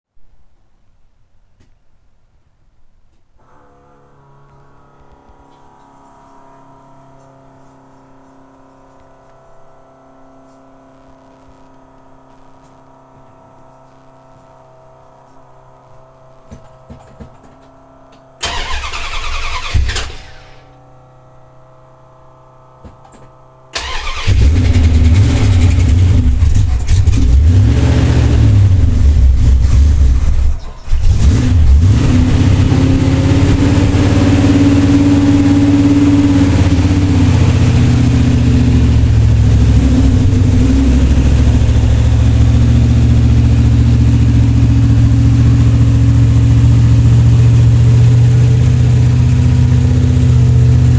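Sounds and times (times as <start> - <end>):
car engine rumbling at idle: 18.4 - 20.7, 23.8 - 50.9
engine cranking: 18.4 - 20.7, 23.8 - 46.2.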